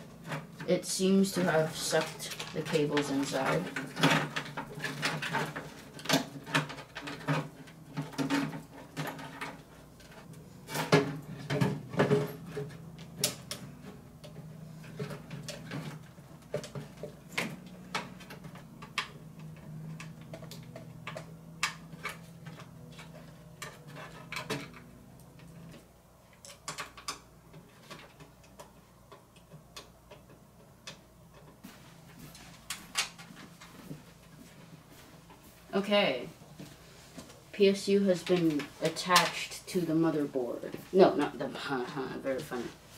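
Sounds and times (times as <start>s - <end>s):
clicks and knocks of cables handled: 1.9s - 35.5s.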